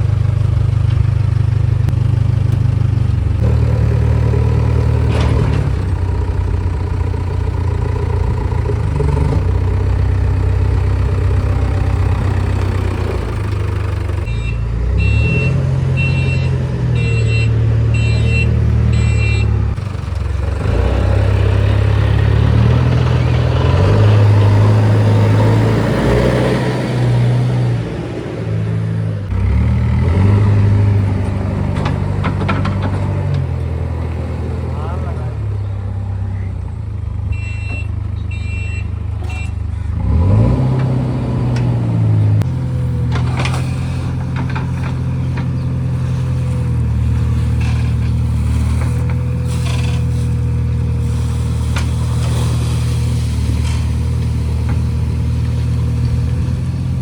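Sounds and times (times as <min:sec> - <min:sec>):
diesel engine under load: 0:00.0 - 0:57.0
reversing alarm beeps: 0:14.3 - 0:19.6, 0:37.3 - 0:39.6.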